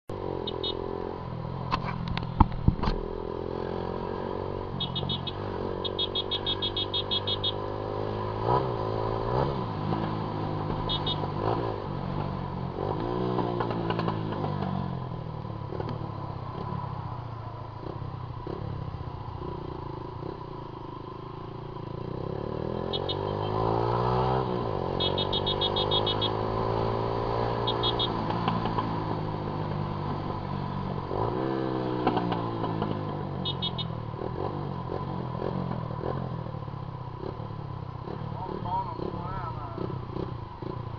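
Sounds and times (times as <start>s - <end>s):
motorcycle engine revving: 0.2s - 40.9s.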